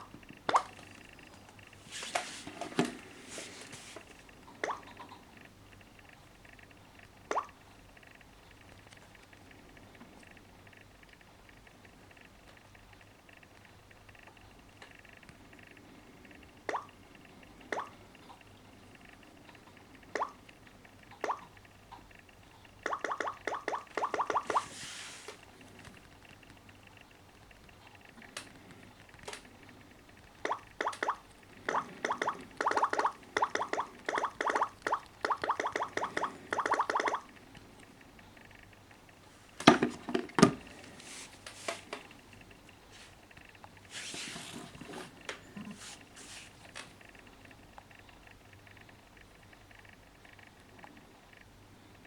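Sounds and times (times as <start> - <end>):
faint ticks: 4.0 - 39.6, 45.2 - 52.0
synthetic water-drop plops: 7.3 - 7.6, 16.7 - 16.9, 20.2 - 20.4, 21.2 - 21.6, 22.8 - 24.7, 30.4 - 37.3.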